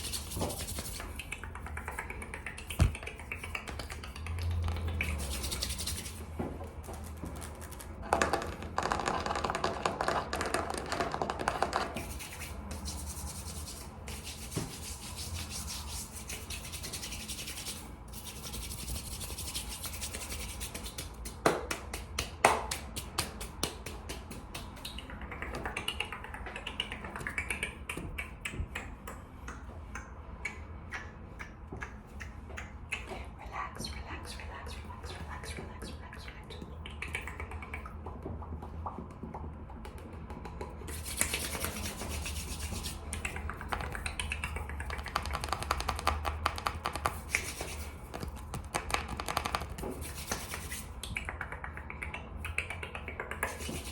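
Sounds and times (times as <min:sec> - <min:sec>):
hands rubbing together: 0:00.0 - 0:25.1, 0:40.8 - 0:51.8, 0:52.6 - 0:53.9.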